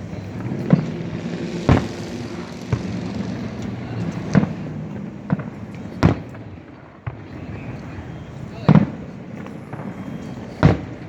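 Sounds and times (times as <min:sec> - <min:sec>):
low engine-like hum: 0:00.0 - 0:06.7
distant fireworks booming: 0:00.0 - 0:11.0.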